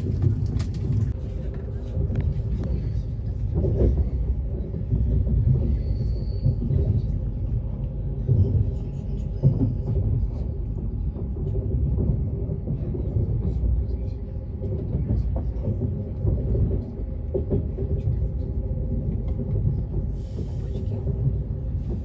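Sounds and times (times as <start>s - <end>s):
train knocks and jolts: 0.0s - 1.3s
train rumble inside carriage: 0.0s - 22.0s.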